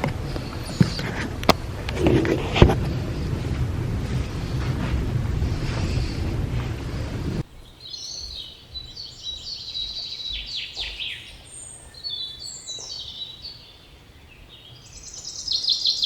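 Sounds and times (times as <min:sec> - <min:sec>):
birds chirping and calling: 0:00.0 - 0:16.0.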